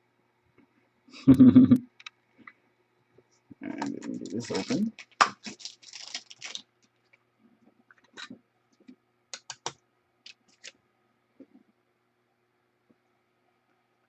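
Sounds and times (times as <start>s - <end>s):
plastic clicks and rustles: 3.8s - 7.2s, 7.9s - 10.8s.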